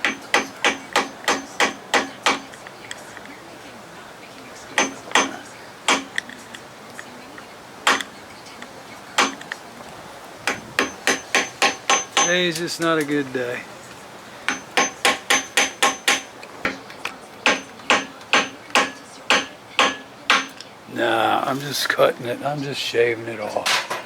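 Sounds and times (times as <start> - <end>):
hammer tapping on metal: 0.0 - 2.7, 4.8 - 6.3, 7.8 - 8.1, 9.2 - 9.6, 10.4 - 13.2, 14.5 - 20.7.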